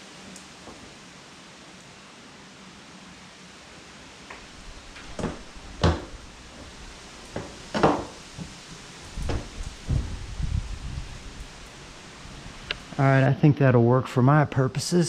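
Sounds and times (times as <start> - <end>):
heavy rain hiss: 0.0 - 15.0.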